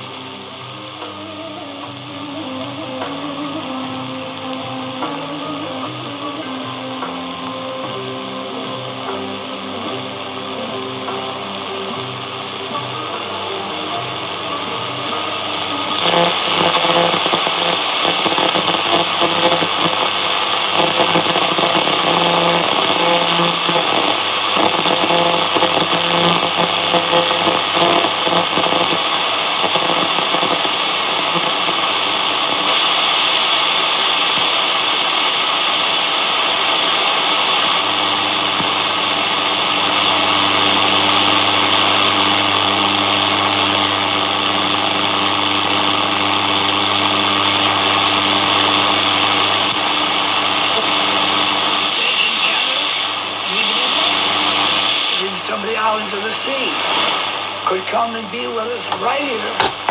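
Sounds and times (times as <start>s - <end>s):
radio hiss and static: 0.0s - 59.9s
faint radio signal fragments: 9.2s - 35.5s.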